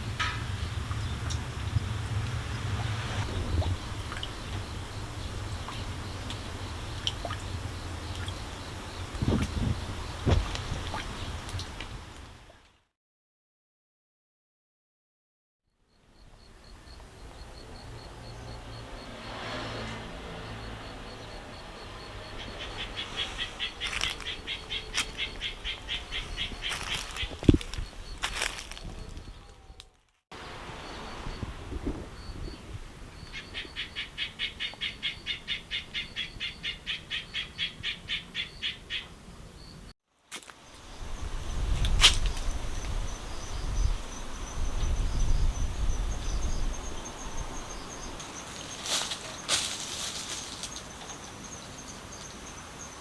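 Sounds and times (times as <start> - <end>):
low rumble: 0.0 - 10.6
crickets trilling: 0.0 - 12.4, 15.9 - 29.6, 30.4 - 53.0.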